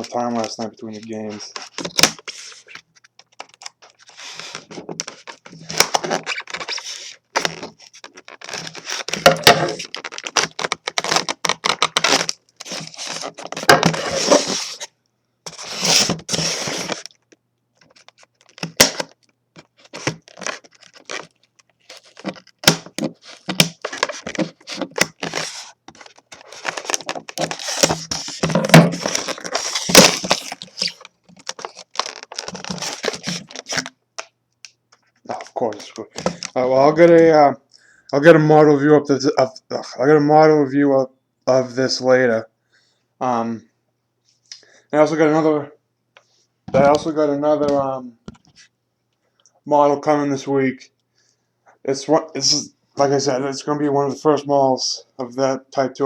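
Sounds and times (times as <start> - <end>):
packaging rustling and tearing: 0.0 - 14.9, 15.5 - 34.3, 35.0 - 36.6.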